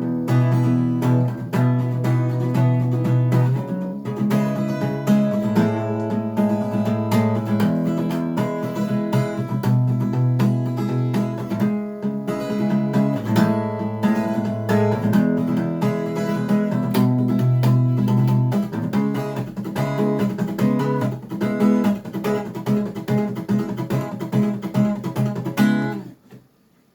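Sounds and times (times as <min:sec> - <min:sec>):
acoustic guitar playing: 0:00.0 - 0:26.4.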